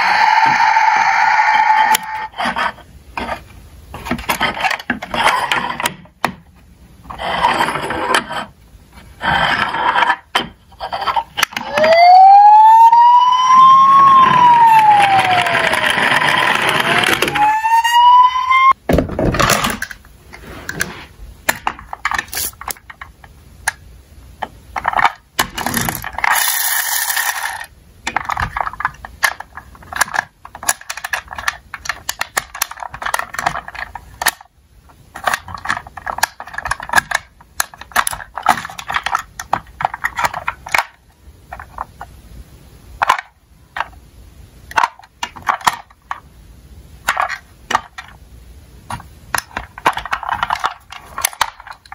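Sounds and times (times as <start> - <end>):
toy siren wailing: 0.0 - 2.3, 11.6 - 18.8
toy cars clattering: 14.1 - 17.5, 21.5 - 23.8, 24.4 - 34.5, 35.1 - 42.1, 43.0 - 44.0, 44.7 - 46.2, 47.0 - 48.2, 48.9 - 51.9.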